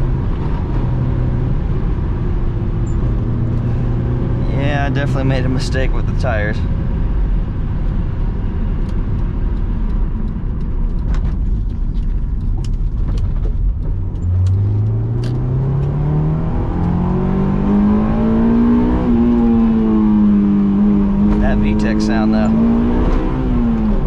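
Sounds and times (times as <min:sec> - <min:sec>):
sports car engine revving: 0:00.0 - 0:06.7, 0:13.9 - 0:24.0
road noise rumble: 0:00.0 - 0:24.0.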